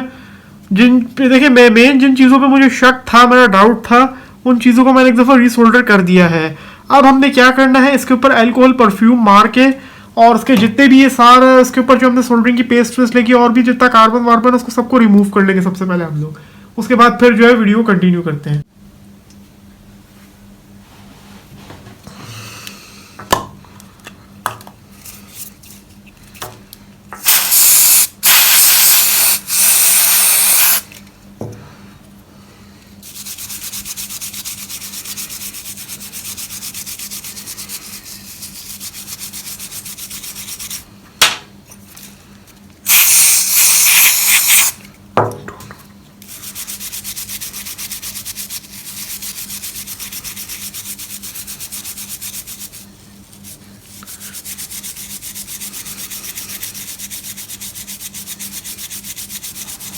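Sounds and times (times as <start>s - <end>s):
aerosol spray hissing: 27.2s - 30.9s, 42.9s - 44.8s.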